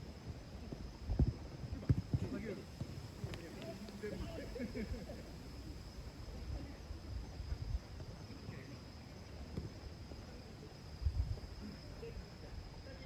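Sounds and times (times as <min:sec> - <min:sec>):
high-pitched insect trill: 0:00.0 - 0:13.0
wind buffeting microphone: 0:10.9 - 0:12.8.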